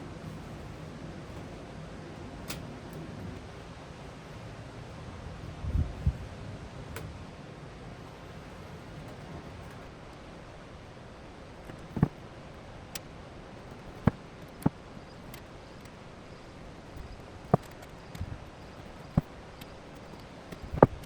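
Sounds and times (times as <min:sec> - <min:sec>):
sharp knocks and clicks: 0:11.5 - 0:21.0.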